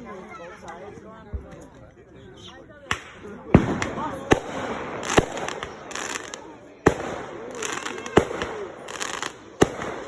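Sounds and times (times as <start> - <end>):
fireworks bangs: 2.9 - 10.0
fireworks crackling and sizzling: 2.9 - 10.0.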